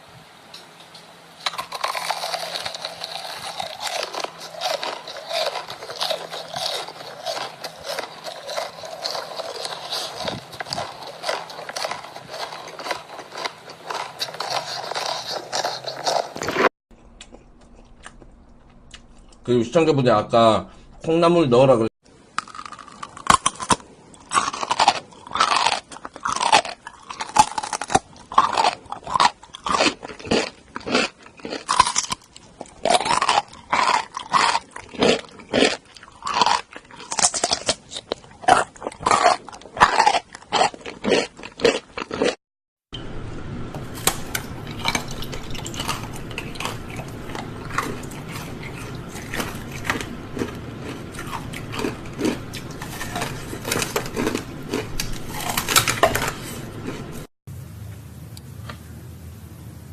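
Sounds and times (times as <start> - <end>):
crunchy chewing of food: 1.4 - 19.5, 22.3 - 42.4, 43.8 - 57.3.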